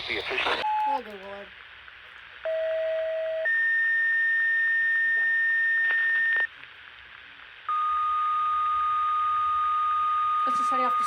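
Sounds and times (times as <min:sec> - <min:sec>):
lower steady tone: 0:02.4 - 0:06.5, 0:07.6 - 0:11.0
steady high tone: 0:07.7 - 0:11.0.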